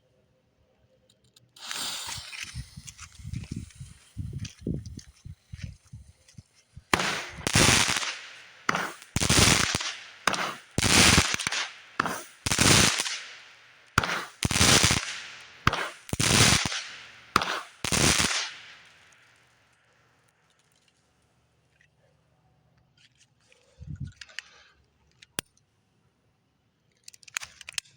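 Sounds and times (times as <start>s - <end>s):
fireworks loud sharp bangs: 1.6s - 3.0s, 6.9s - 19.1s.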